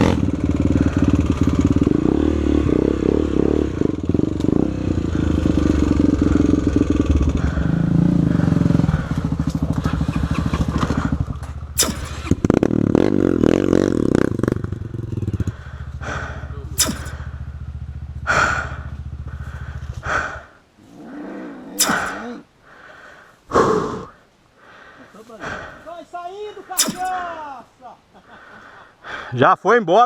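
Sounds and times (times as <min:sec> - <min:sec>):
motorcycle engine revving: 0:00.0 - 0:22.6
short sharp sounds: 0:11.8 - 0:12.4, 0:16.8 - 0:17.2, 0:21.8 - 0:22.4, 0:26.7 - 0:27.3.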